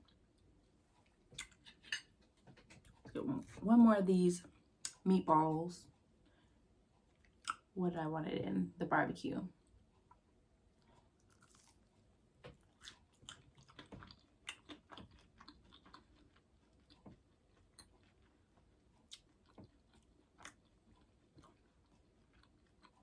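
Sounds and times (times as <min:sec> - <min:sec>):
close-up chewing: 0:07.0 - 0:07.7, 0:10.0 - 0:23.0.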